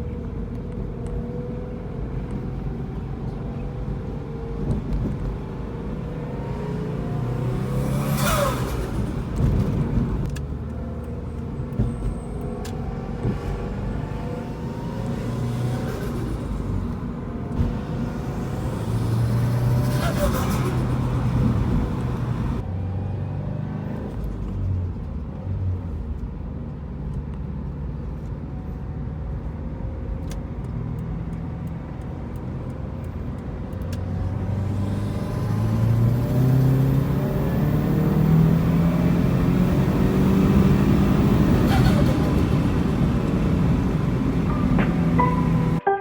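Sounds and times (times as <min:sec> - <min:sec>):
turbocharged car engine accelerating: 0:04.5 - 0:24.6, 0:31.3 - 0:45.8.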